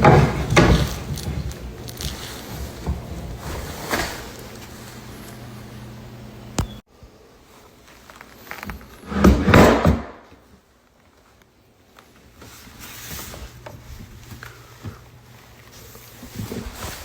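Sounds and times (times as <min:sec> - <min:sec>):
wooden handling noises: 0:00.0 - 0:05.6.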